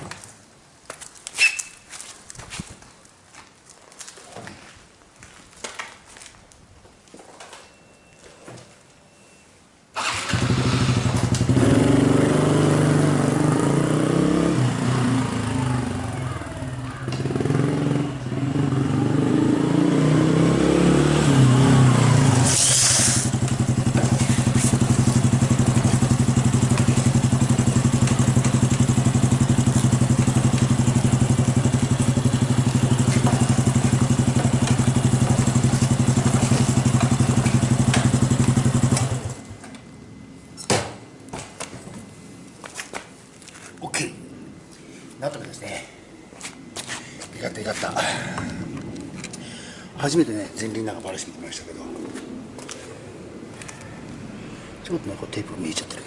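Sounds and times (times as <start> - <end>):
high hiss: 22.4 - 23.4
motorcycle engine running: 23.1 - 39.5.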